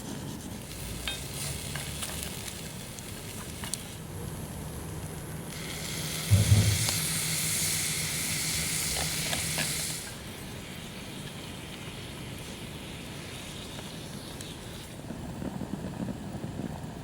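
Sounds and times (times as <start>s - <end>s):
meat sizzling in skillet: 0.6s - 4.0s, 5.5s - 15.0s
low knock: 6.3s - 7.0s.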